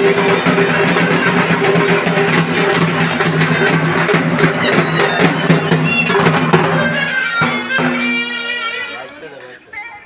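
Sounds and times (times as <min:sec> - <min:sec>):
rapid percussion: 0:00.0 - 0:09.3.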